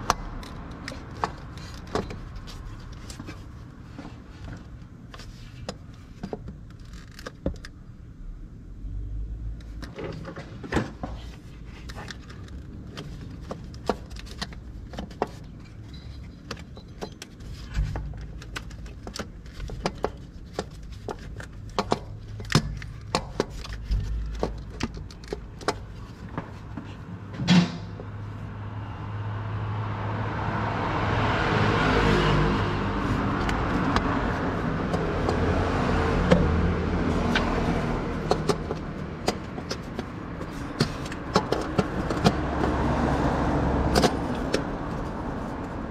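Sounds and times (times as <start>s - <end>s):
metallic clicks and knocks: 37.2s - 42.9s.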